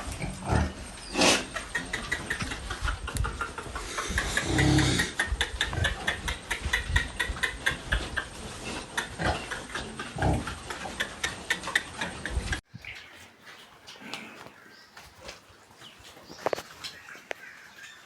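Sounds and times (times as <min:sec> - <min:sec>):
pigs grunting: 0:00.0 - 0:02.6, 0:03.6 - 0:06.3, 0:07.6 - 0:15.5.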